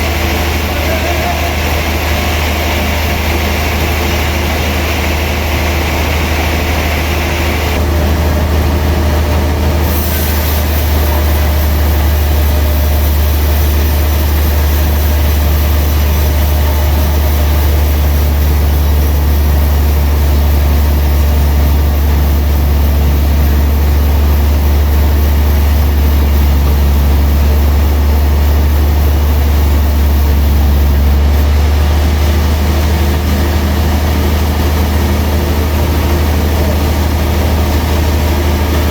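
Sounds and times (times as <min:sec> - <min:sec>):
sawmill machinery humming: 0:00.0 - 0:38.9
higher hiss: 0:09.8 - 0:31.6.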